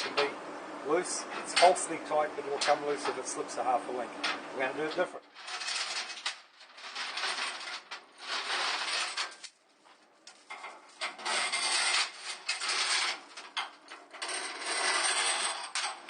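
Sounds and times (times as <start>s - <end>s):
heavy chain clinking and scraping: 5.2s - 9.5s, 10.3s - 16.0s.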